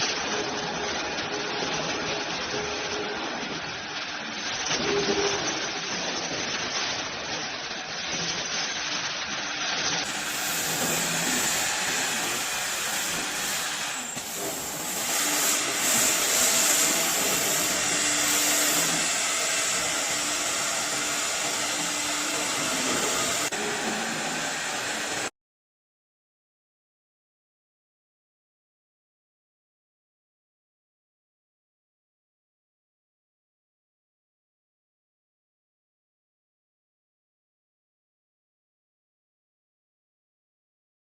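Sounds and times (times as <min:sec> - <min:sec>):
cnc router spindle whine: 0:10.0 - 0:25.3
hissing machine noise: 0:10.0 - 0:25.3.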